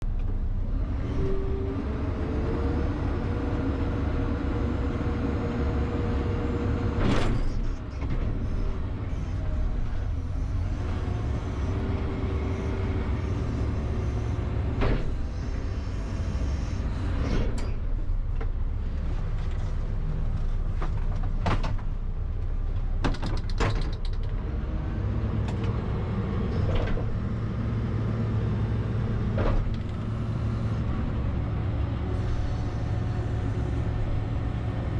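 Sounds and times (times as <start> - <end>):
diesel engine running: 0.0 - 23.0, 24.1 - 34.9
hydraulic whine: 7.2 - 17.8, 29.6 - 30.9, 32.1 - 34.9.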